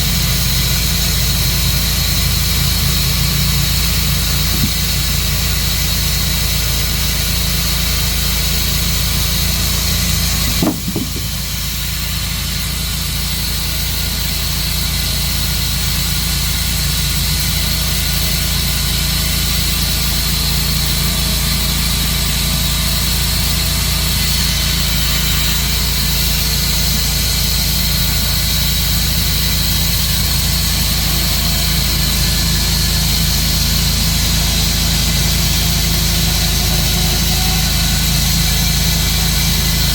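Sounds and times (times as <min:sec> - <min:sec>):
sawmill engine running: 0:00.0 - 0:39.9
short knock: 0:10.4 - 0:11.5.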